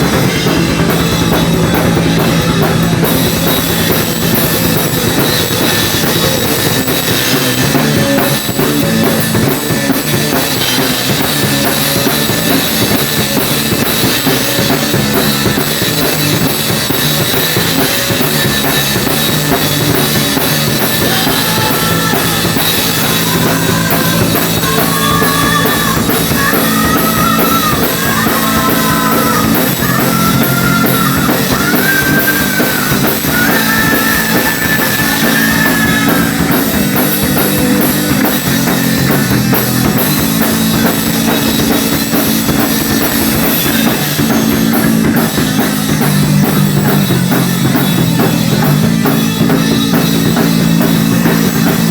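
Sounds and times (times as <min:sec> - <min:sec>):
high melodic lead line: 0:00.0 - 0:51.9
rock and roll band playing: 0:00.0 - 0:51.9.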